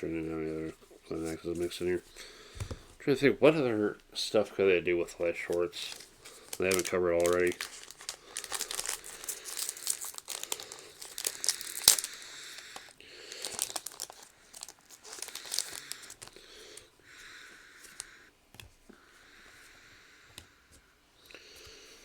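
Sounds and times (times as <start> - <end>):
foil wrappers crinkling and tearing: 5.2 - 16.9.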